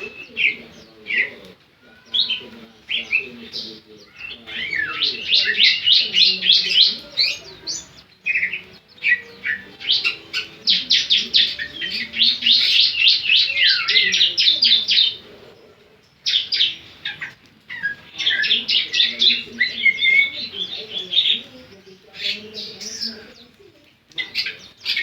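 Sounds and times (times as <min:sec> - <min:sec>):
bird singing high chipping notes: 0:02.0 - 0:15.3.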